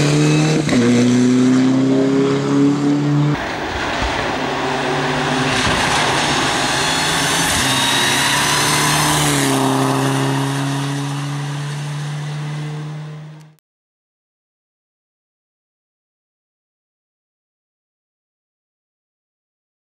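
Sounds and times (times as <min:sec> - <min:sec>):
road and tyre noise: 0:00.0 - 0:13.6.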